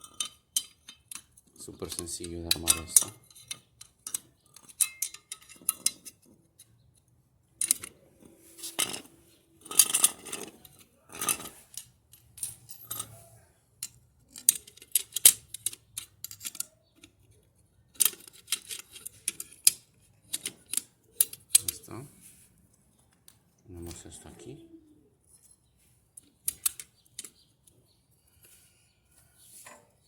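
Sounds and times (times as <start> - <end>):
metal parts clinking: 0.0 - 6.8, 7.6 - 21.9, 25.3 - 27.8.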